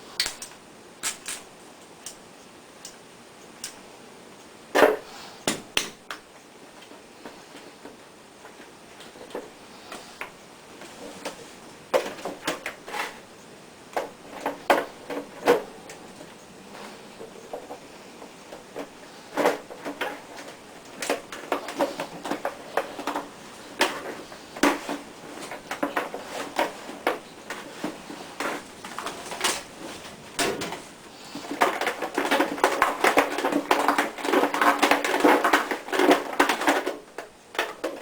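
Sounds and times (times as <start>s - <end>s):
kitchen equipment knocking and clattering: 17.2s - 38.0s.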